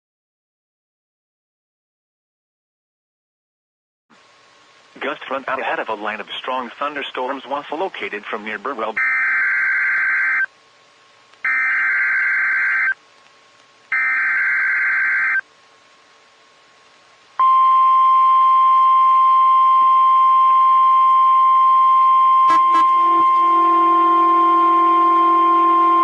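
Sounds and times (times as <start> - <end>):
steady warning alarm tone: 9.0 - 10.5, 11.4 - 13.0, 13.9 - 15.4, 17.4 - 26.0
buzzy data bursts: 22.5 - 23.2.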